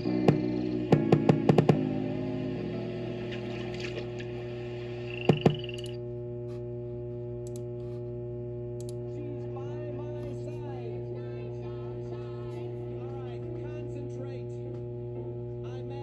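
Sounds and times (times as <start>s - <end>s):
electrical hum: 0.0s - 16.0s
sharp clicks: 5.2s - 6.0s, 7.4s - 7.7s, 8.8s - 9.0s.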